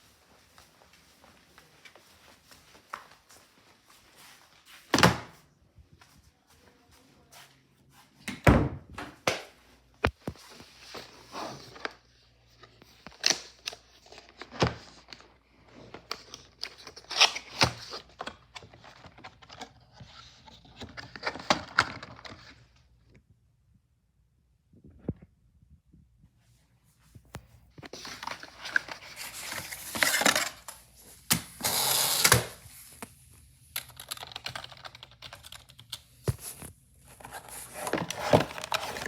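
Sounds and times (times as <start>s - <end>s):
cardboard packaging rustling: 27.7s - 39.0s.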